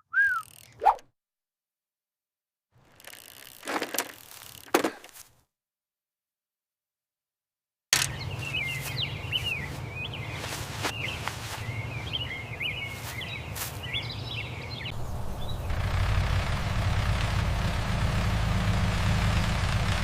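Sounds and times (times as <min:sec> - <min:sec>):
sharp clicks: 0:07.9 - 0:08.2
birds chirping: 0:08.0 - 0:19.6
steady low rumble: 0:14.8 - 0:20.0.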